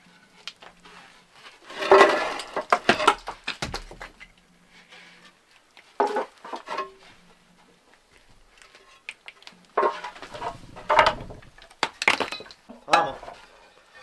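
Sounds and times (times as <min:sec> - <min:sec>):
hard objects knocking together: 0:01.9 - 0:04.3.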